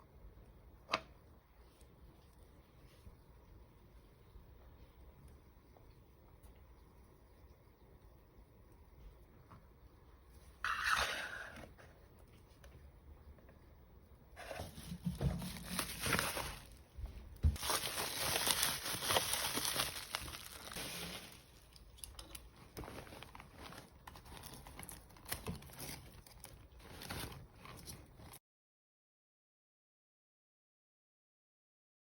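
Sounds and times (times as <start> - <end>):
packaging crinkling and tearing: 15.2 - 16.9, 17.5 - 28.4.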